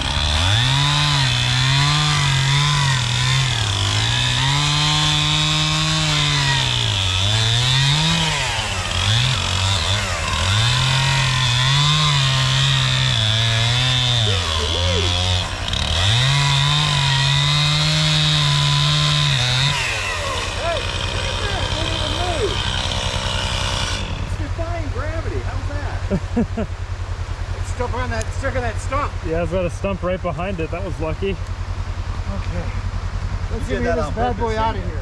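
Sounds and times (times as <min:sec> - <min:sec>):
chainsaw cutting a log: 0:00.0 - 0:26.6.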